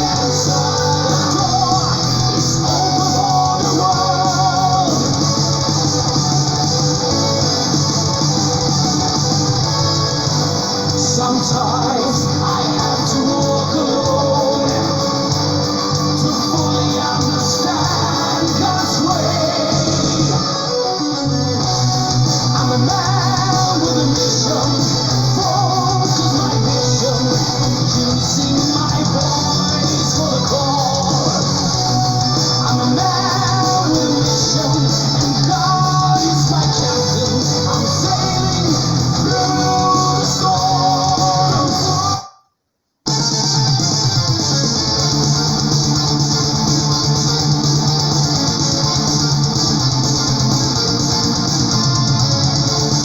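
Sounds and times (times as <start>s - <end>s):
electric guitars: 0.0s - 42.2s, 43.1s - 53.0s
bass: 0.0s - 42.3s, 43.1s - 53.0s
drums: 0.0s - 42.3s, 43.0s - 53.0s
metal band with singing: 0.0s - 42.3s, 43.2s - 53.0s.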